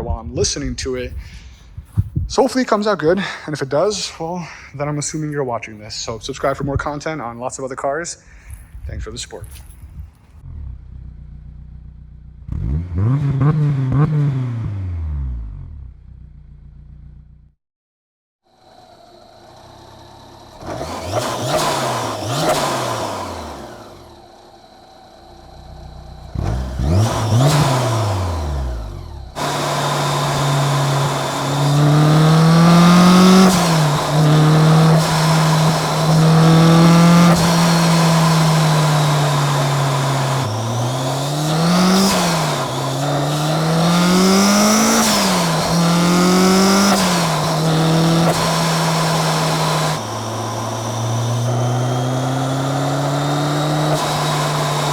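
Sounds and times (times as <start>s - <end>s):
supercharger whine: 5.9s - 17.5s, 18.5s - 54.9s
car engine revving: 10.2s - 17.4s, 18.6s - 54.9s.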